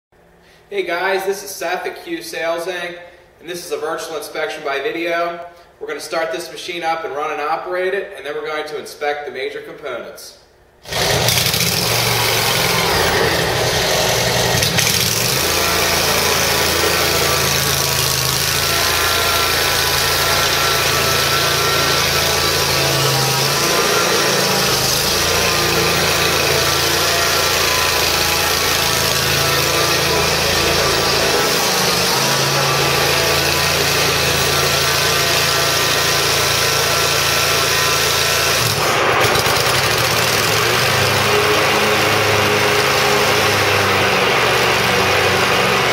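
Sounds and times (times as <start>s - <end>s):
mower engine running: 10.8s - 45.9s.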